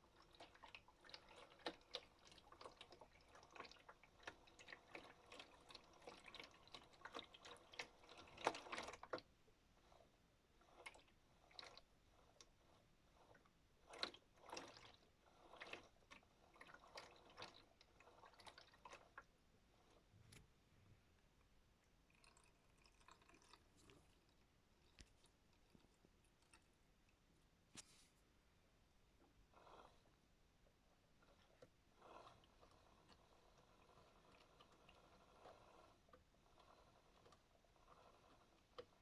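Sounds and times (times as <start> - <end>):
water sloshing in washing machine drum: 0.1 - 9.2, 13.2 - 19.2
small splashes and clicks: 0.1 - 9.3, 13.3 - 19.3.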